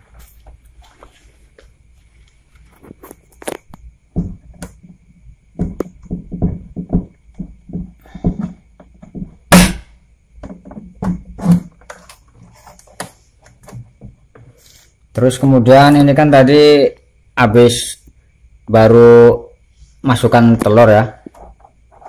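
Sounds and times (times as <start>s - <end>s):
handling knocks and thumps: 2.8s - 14.6s.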